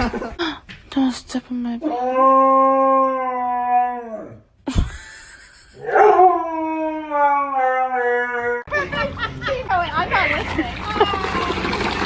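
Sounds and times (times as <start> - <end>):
dog howling: 1.8 - 4.4, 5.9 - 8.7.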